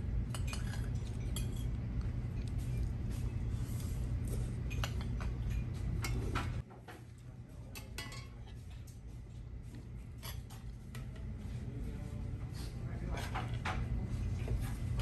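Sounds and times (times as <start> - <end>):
low steady hum: 0.0 - 15.0
cutlery clinking on dishes: 0.3 - 1.8, 4.6 - 7.0, 7.6 - 8.7, 10.1 - 11.2.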